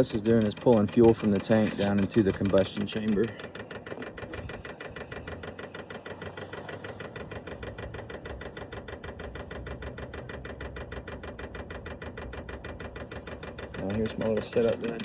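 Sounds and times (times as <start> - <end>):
fuel pump ticking rapidly: 0.0 - 15.0
steady low hum: 0.0 - 15.0.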